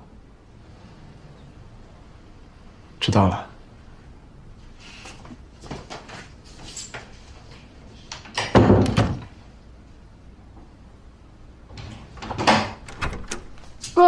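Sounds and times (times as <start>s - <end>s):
door shutting with thud: 8.4s - 9.3s, 11.8s - 13.6s.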